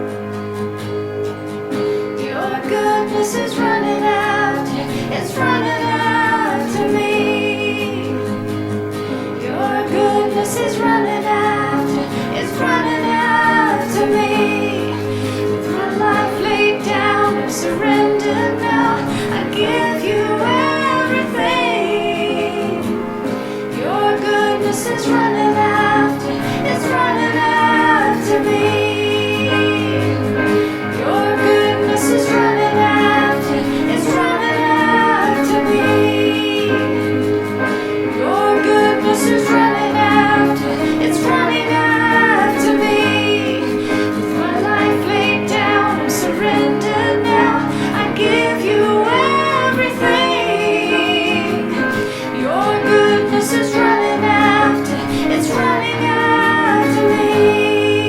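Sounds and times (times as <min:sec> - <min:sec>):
instrumental accompaniment: 0:00.0 - 0:58.0
woman singing: 0:02.2 - 0:58.0.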